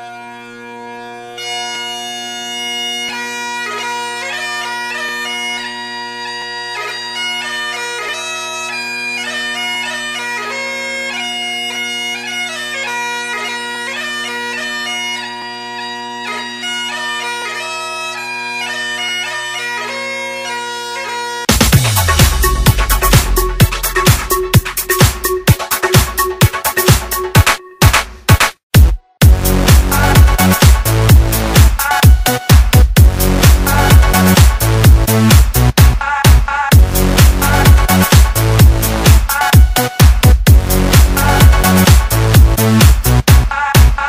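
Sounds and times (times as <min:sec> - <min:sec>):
bagpipe drones: 0:00.0 - 0:24.9
bagpipe chanter melody: 0:00.0 - 0:27.8, 0:29.2 - 0:35.2.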